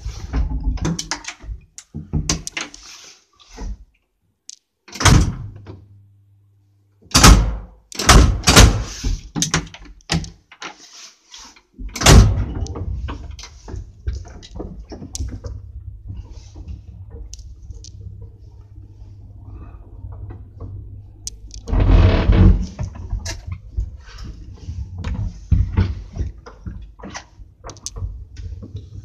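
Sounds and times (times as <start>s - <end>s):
lift machinery hum: 12.6s - 26.0s.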